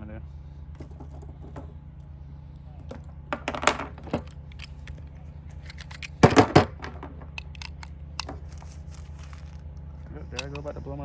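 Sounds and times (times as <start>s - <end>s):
cartridges clicking into magazine: 4.2s - 6.4s, 7.3s - 8.4s, 10.3s - 10.7s.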